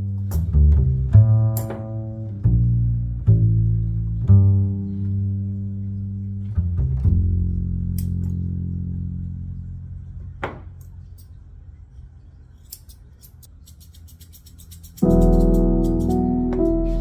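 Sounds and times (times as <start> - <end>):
slow plucked string notes: 0.0 - 9.8, 15.0 - 17.0.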